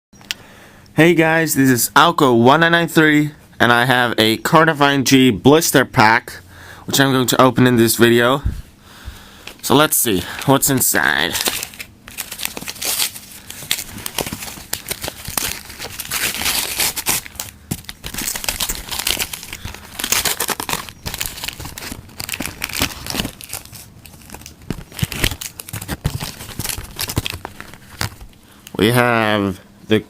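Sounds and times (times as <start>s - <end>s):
plastic packaging crinkling and tearing: 10.2s - 28.4s.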